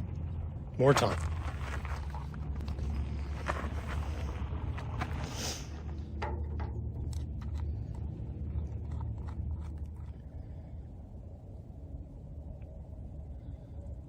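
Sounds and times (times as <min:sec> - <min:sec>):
steady low rumble: 0:00.0 - 0:14.0.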